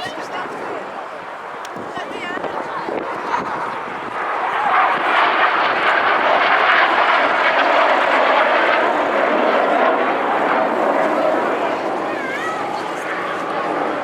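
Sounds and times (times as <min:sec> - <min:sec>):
aircraft engine rushing past: 0:00.0 - 0:14.0.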